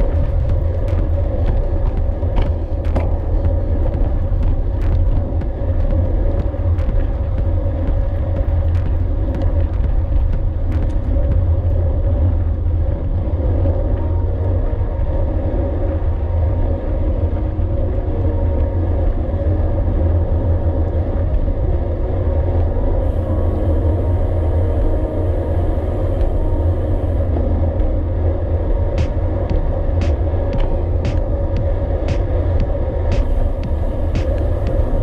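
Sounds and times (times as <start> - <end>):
bicycle tyre and drivetrain noise: 0.0 - 35.0
wind buffeting microphone: 0.0 - 35.0.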